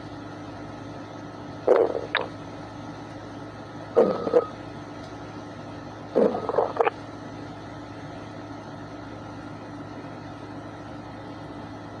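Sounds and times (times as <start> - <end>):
background hum and hiss: 0.0 - 12.0.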